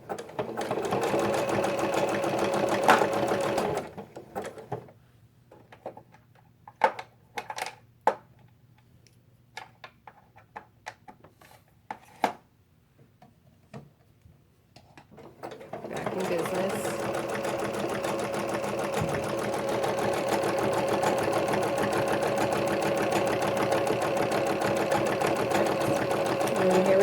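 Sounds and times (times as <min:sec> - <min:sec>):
sewing machine running: 0:00.1 - 0:04.0, 0:15.4 - 0:27.0.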